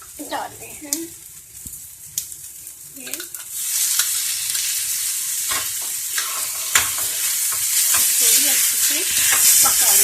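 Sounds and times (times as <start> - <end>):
food sizzling in pan: 0.0 - 10.0
spoon knocking against pan: 5.5 - 8.4.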